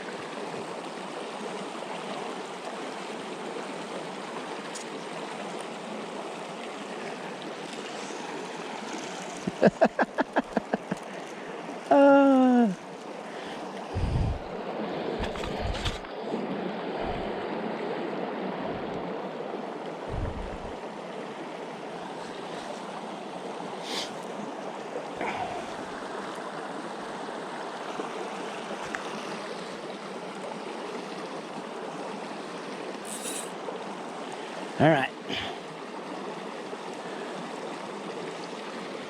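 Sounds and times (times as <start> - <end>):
creek running over rocks: 0.0 - 39.0
low thumps: 20.1 - 20.8.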